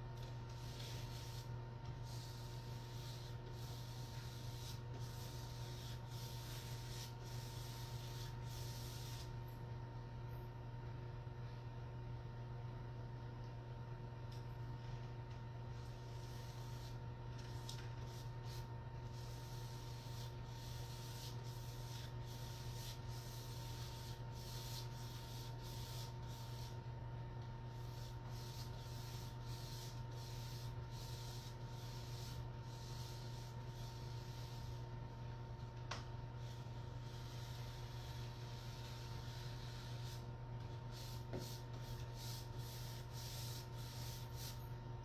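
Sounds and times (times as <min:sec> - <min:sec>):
steady low hum: 0:00.0 - 0:45.0
paint roller rubbing on wall: 0:00.5 - 0:09.4, 0:15.8 - 0:26.9, 0:27.7 - 0:35.1, 0:36.3 - 0:44.6.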